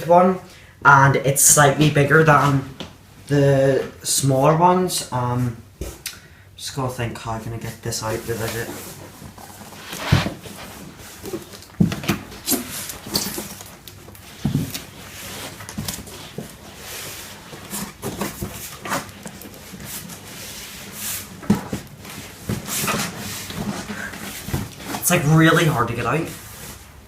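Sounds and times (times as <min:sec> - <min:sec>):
cardboard scraping and rustling: 0:08.1 - 0:27.0.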